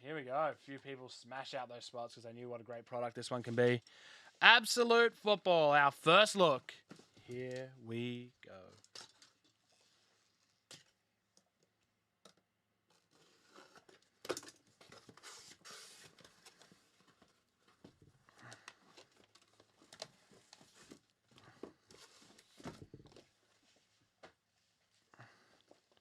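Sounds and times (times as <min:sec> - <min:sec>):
clicks and rustles of handling: 0:08.6 - 0:24.4.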